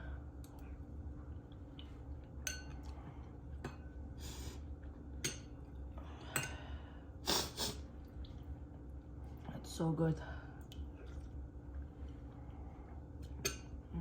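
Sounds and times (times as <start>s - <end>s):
low steady hum: 0.0s - 14.0s
utensils clinking against a dish: 2.4s - 2.9s, 5.2s - 5.6s, 6.2s - 6.7s, 13.3s - 13.8s.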